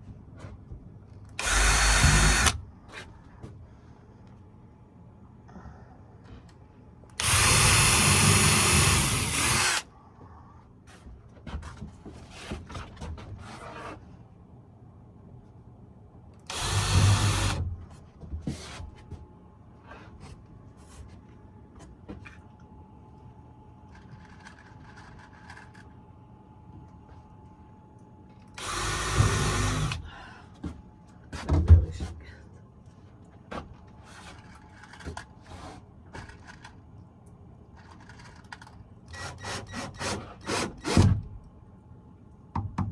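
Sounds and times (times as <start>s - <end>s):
power drill driving screws: 1.4s - 2.6s, 7.2s - 9.8s, 16.5s - 17.6s, 28.6s - 30.0s, 39.2s - 41.1s.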